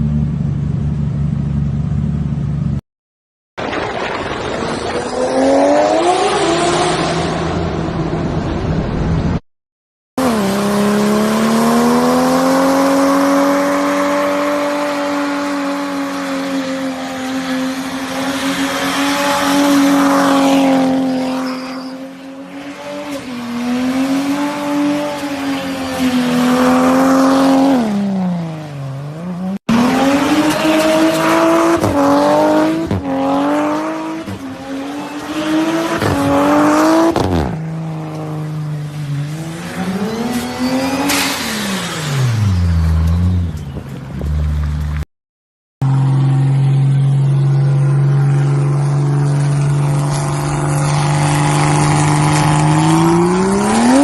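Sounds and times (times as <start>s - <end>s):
turbocharged engine revving: 10.2s - 21.9s, 45.8s - 54.0s.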